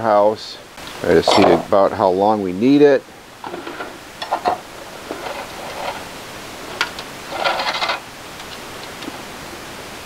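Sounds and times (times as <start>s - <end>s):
wire rustling scrape: 3.4s - 8.1s.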